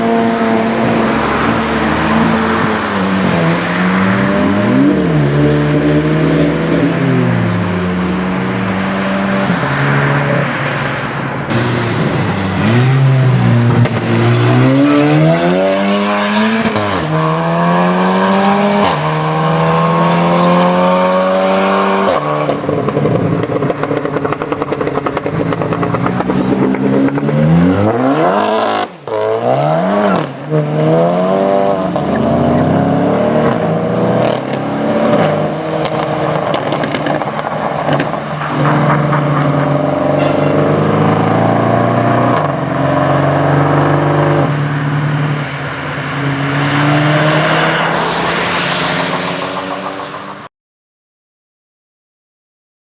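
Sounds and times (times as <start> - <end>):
car engine accelerating hard: 0.0 - 50.5.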